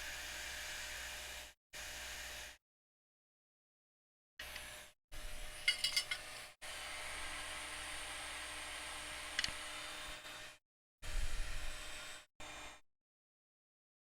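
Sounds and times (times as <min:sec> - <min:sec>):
metal tool clinks: 0:05.7 - 0:06.4
click: 0:09.4 - 0:09.6.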